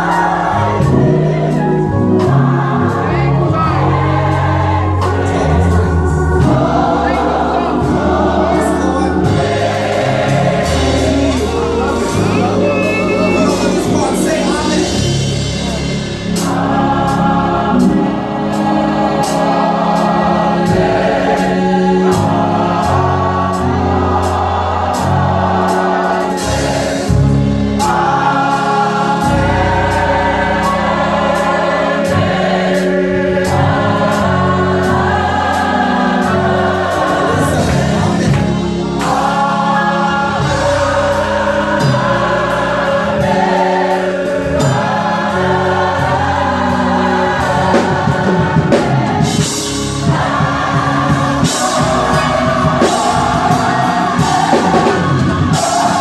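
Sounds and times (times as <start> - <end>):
band playing: 0.0 - 56.0
drums beating: 0.0 - 56.0
gospel choir singing: 0.0 - 56.0.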